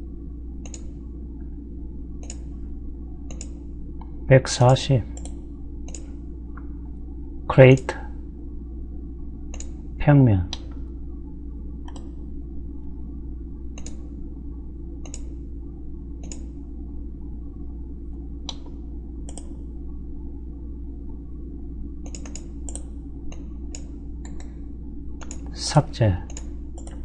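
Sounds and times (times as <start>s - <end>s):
low electrical hum: 0.0s - 27.0s
computer mouse clicking: 0.6s - 1.0s, 2.2s - 2.5s, 3.3s - 3.6s, 5.2s - 6.2s, 9.5s - 9.8s, 11.8s - 12.1s, 13.7s - 14.1s, 15.0s - 15.3s, 16.2s - 16.5s, 18.4s - 19.6s, 22.0s - 24.6s, 25.2s - 25.5s, 26.3s - 27.0s.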